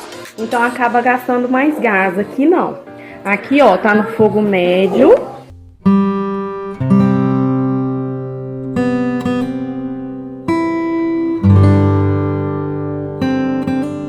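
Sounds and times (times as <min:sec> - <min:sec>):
acoustic guitar strummed chords: 0:02.9 - 0:14.0.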